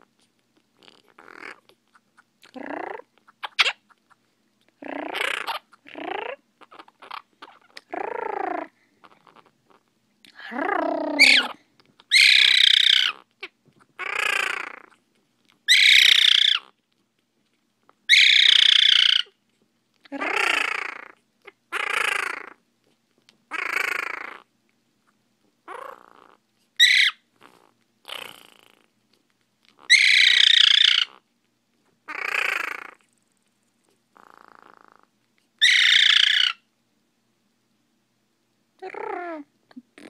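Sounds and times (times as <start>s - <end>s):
parrot calling: 0.8s - 4.2s, 4.8s - 9.8s, 10.4s - 15.0s, 15.6s - 16.8s, 18.1s - 19.4s, 20.1s - 22.6s, 23.5s - 24.5s, 25.6s - 28.6s, 29.8s - 31.2s, 32.0s - 33.0s, 35.6s - 36.7s.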